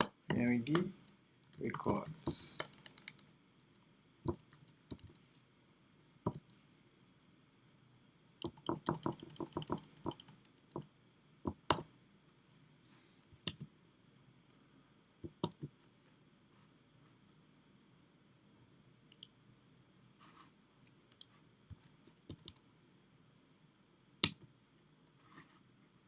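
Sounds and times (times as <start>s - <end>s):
computer keyboard typing: 0.0s - 3.4s, 4.2s - 5.6s, 6.2s - 6.6s, 8.4s - 10.9s, 15.2s - 15.7s, 22.1s - 22.6s.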